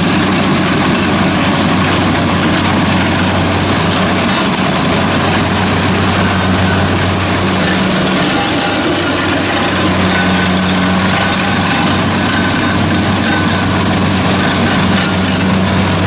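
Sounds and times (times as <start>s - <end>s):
diesel engine droning: 0.0s - 16.0s
mechanical din: 1.7s - 16.0s.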